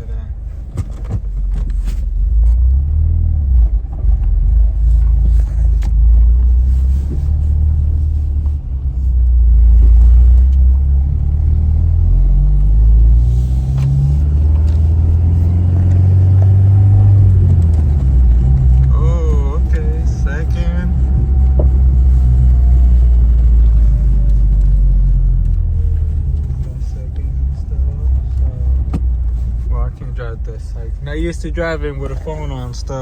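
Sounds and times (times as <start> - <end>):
car engine rumbling: 0.0 - 33.0.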